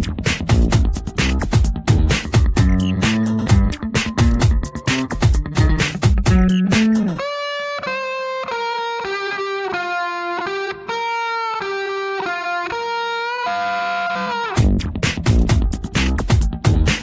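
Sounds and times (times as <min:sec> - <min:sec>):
drum beat: 0:00.0 - 0:07.2, 0:14.6 - 0:17.0
slow electric guitar melody: 0:02.6 - 0:15.0.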